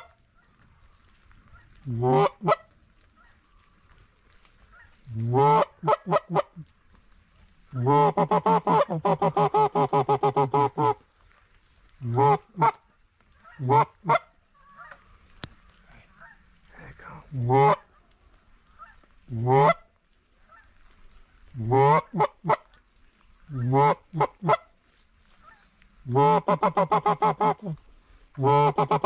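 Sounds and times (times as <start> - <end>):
goose call honks and clucks: 0.0 - 0.5, 1.4 - 3.4, 4.7 - 6.7, 7.7 - 11.0, 12.0 - 15.2, 17.3 - 18.0, 18.7 - 20.8, 21.5 - 22.8, 23.5 - 24.8, 25.4 - 27.8, 28.4 - 29.0.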